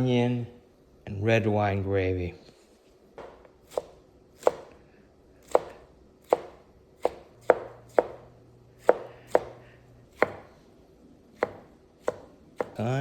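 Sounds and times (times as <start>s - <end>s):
knife chopping on cutting board: 3.2s - 4.8s, 5.4s - 10.6s, 11.3s - 13.0s.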